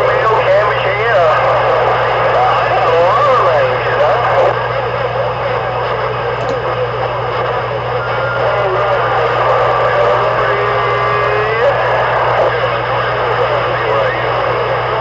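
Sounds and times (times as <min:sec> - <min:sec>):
garbled voices: 0:00.0 - 0:04.9, 0:08.0 - 0:15.0
radio static hiss: 0:00.0 - 0:15.0
steady low hum: 0:00.0 - 0:15.0
whistling tone: 0:07.9 - 0:08.9.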